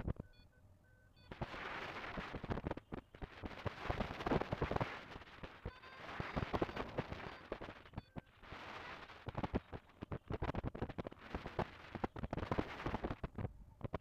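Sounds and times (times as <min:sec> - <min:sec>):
faint steady beeping tone: 0:00.0 - 0:01.6, 0:05.6 - 0:08.5.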